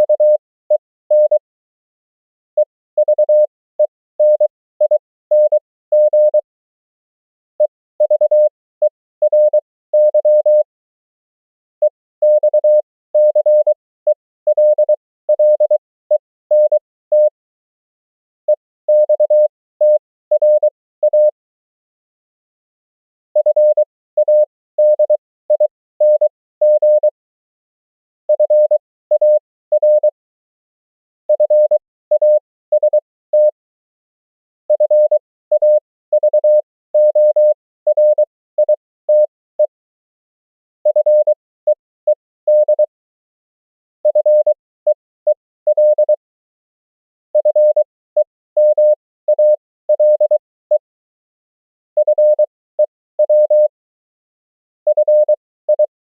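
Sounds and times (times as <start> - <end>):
morse code tone: 42.5 - 42.9, 47.4 - 50.8, 52.0 - 52.5, 54.9 - 55.9.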